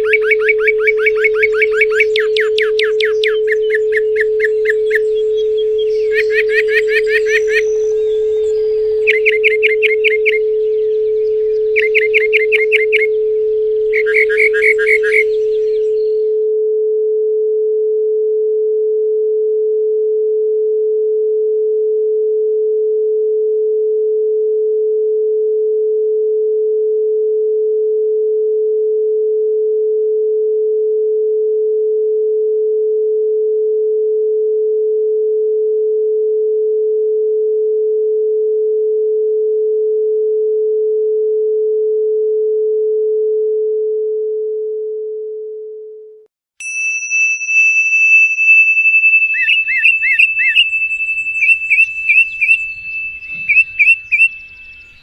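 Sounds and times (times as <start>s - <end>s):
steady sine tone: 0.0s - 20.0s, 46.6s - 55.0s.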